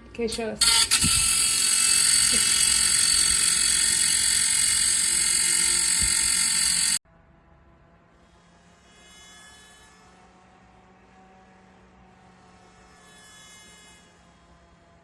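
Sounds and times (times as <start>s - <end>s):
desk fan whirring: 0.5s - 7.0s.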